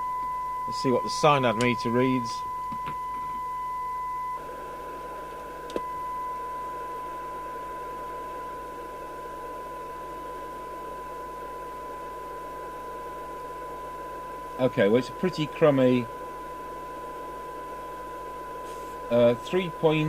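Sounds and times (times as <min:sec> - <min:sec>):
steady test tone from radio speaker: 0:00.0 - 0:20.0
radio receiver hiss: 0:11.7 - 0:20.0.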